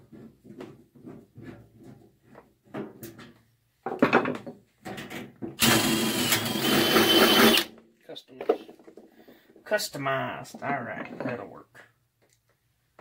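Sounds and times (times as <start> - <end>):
power tool running: 5.6 - 7.7.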